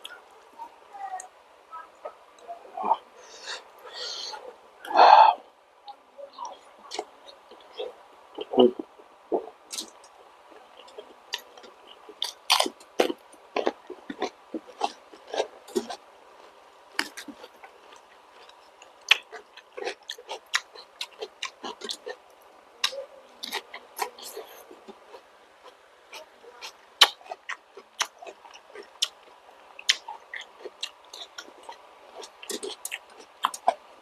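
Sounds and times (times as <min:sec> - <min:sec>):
chewing and crunching: 0:09.7 - 0:33.9.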